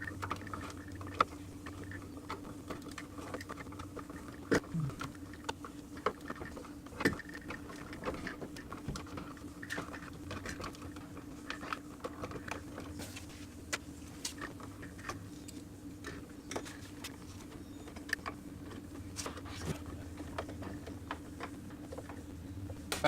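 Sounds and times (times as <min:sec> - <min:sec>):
low hum: 0:04.6 - 0:05.2.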